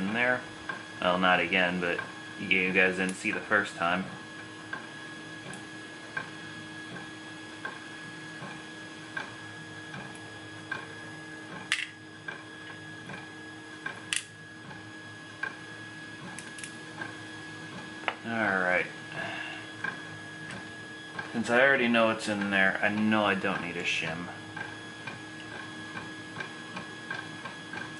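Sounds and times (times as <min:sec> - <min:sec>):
electrical hum: 0:00.0 - 0:27.9.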